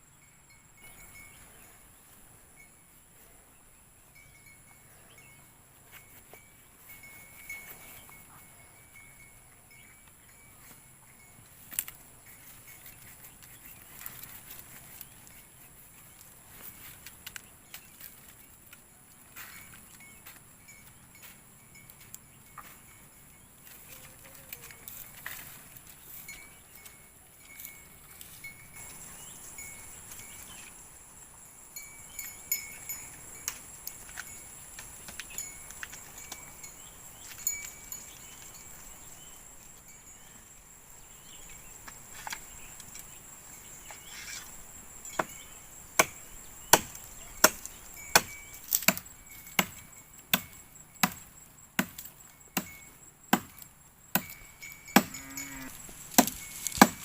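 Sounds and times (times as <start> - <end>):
chopping strikes: 46.0 - 54.4, 55.0 - 55.2, 56.1 - 57.0
high insect buzzing: 54.6 - 57.0.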